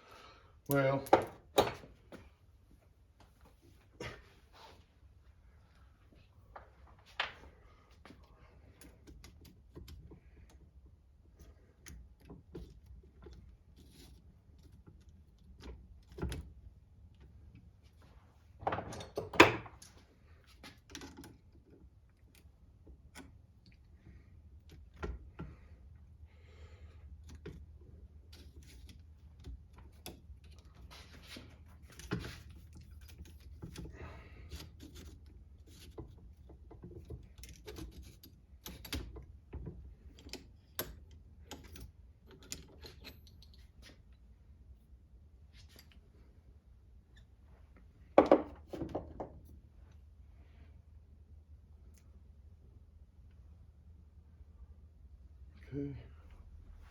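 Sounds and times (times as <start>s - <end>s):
light clicks and taps of tools: 27.1s - 44.3s.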